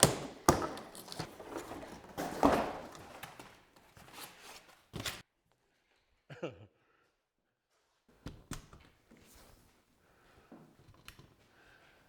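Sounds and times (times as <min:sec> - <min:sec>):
glass windshield knocks and clunks: 0:00.0 - 0:03.5
scraping and rustling: 0:00.0 - 0:05.2.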